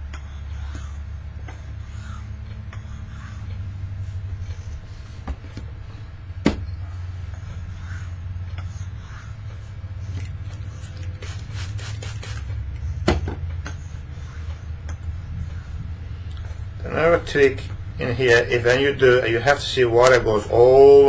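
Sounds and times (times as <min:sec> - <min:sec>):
steady low hum: 0:00.0 - 0:21.0
razor scraping on a wet hone: 0:10.2 - 0:13.0.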